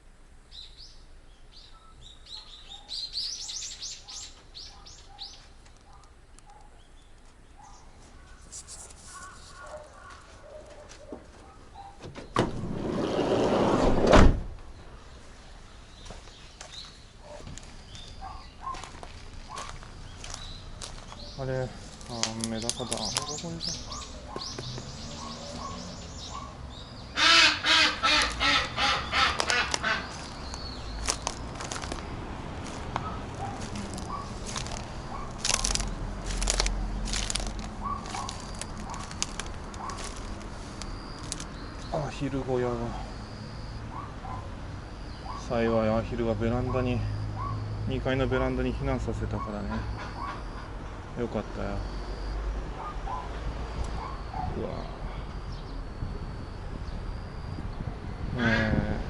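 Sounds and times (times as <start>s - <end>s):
footsteps crunching on wet ground: 8.0s - 11.6s, 15.2s - 26.2s, 27.9s - 41.9s
door banging against stop: 12.0s - 14.6s
sliding door dragged open: 12.4s - 14.5s.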